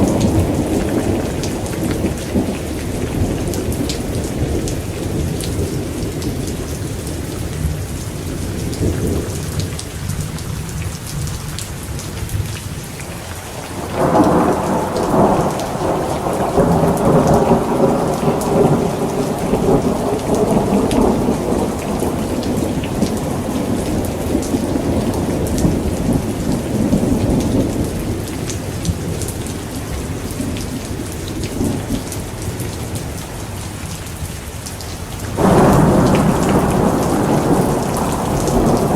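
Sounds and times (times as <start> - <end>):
steady rain: 0.0 - 38.9
thunder rolling: 13.6 - 29.4, 35.4 - 38.9.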